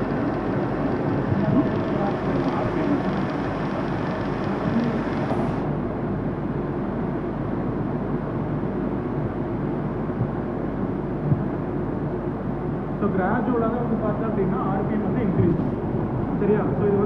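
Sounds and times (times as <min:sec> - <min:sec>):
high hiss: 0:00.0 - 0:05.7
industrial machinery drone: 0:00.0 - 0:05.8.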